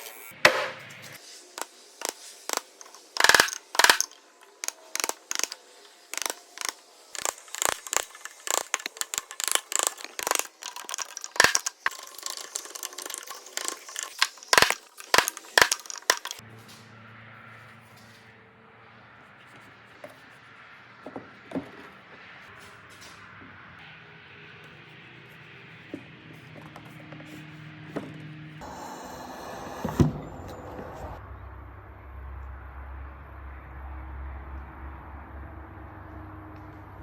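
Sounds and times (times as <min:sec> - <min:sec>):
hand tools clicking on wood: 0:01.6 - 0:16.4.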